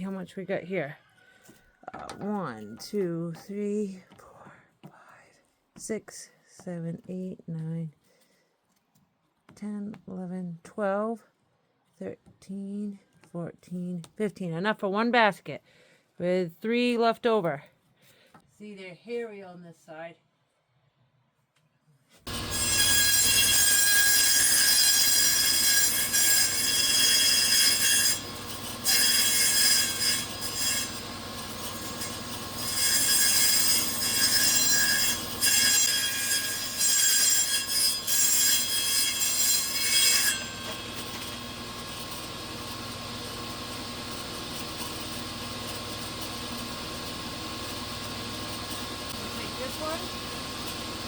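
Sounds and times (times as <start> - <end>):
table saw whining through wood: 22.3 - 51.0.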